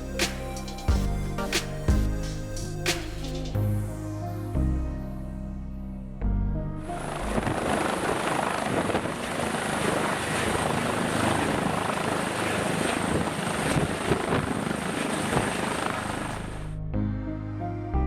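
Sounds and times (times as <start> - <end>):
helicopter running: 7.0 - 16.6.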